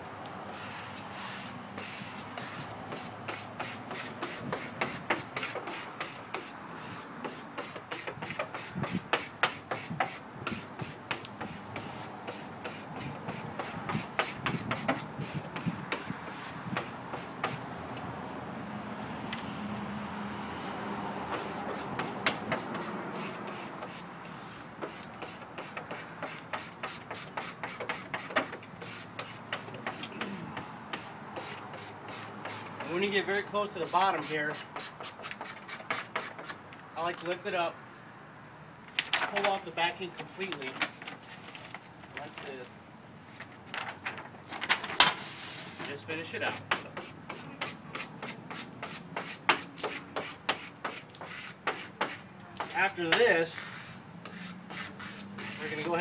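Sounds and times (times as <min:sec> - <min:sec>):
squeegee scraping on glass: 0:00.5 - 0:17.6, 0:21.3 - 0:36.6, 0:45.1 - 0:56.0.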